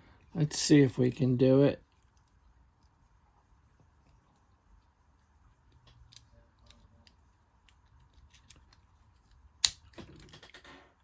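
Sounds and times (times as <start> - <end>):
padlock shackle popping open: 6.1 - 10.2.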